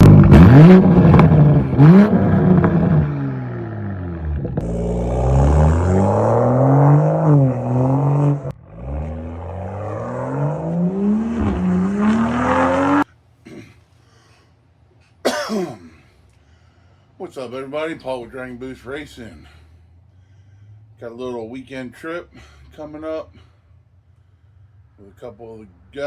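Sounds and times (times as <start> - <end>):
car engine revving: 0.0 - 13.1.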